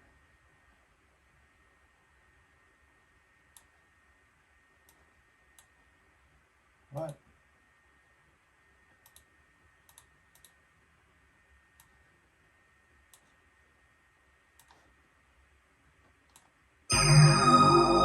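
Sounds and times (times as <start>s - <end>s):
bright sustained synthesizer tones: 16.9s - 18.0s.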